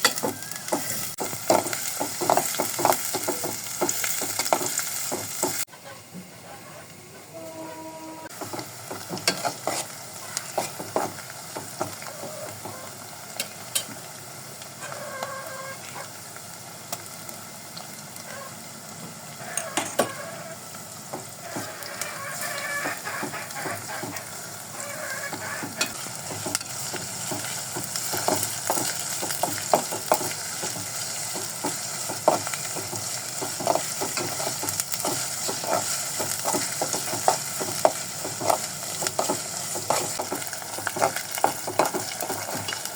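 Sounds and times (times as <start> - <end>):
food sizzling in a pan: 0.0 - 5.7, 7.3 - 42.9
spatula scraping pan: 7.4 - 11.2, 21.4 - 42.9.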